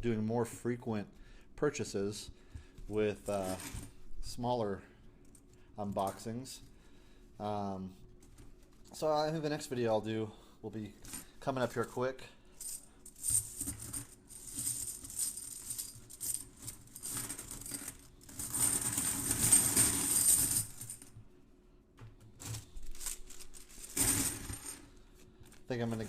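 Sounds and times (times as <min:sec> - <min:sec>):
coins clinking: 0:12.6 - 0:21.1, 0:22.4 - 0:24.9.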